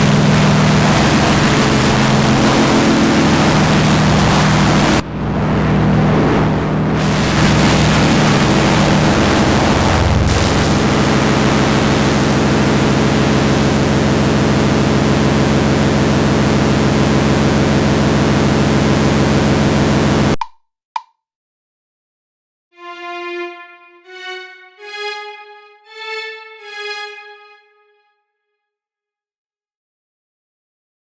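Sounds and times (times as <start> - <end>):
low electronic drone: 0.0 - 20.4
static hiss: 7.0 - 12.6.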